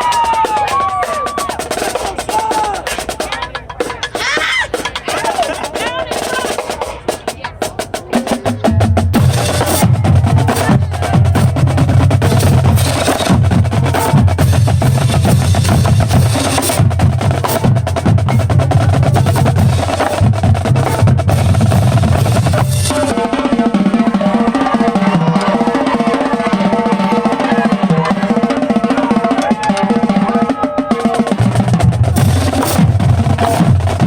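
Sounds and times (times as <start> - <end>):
snare drum rolls: 0.0 - 34.0
low bass drums: 7.5 - 24.6, 31.3 - 34.0.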